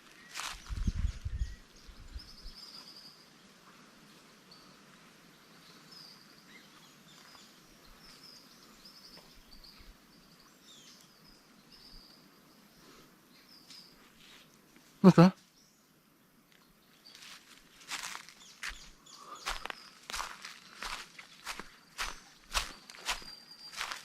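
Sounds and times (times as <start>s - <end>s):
bird chirps and trills: 16.9s - 24.0s.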